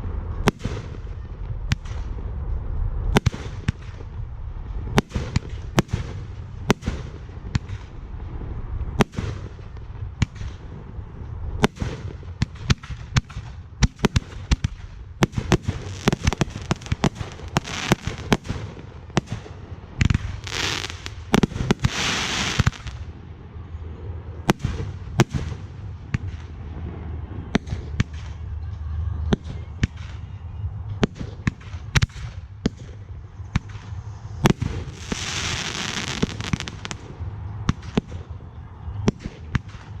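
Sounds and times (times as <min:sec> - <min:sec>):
fireworks booms and pops: 0:03.1 - 0:04.2, 0:04.9 - 0:08.0, 0:09.0 - 0:10.9, 0:11.6 - 0:23.0, 0:24.5 - 0:26.6, 0:31.0 - 0:38.3
fireworks hissing: 0:15.4 - 0:19.2, 0:20.1 - 0:23.0, 0:33.8 - 0:37.0.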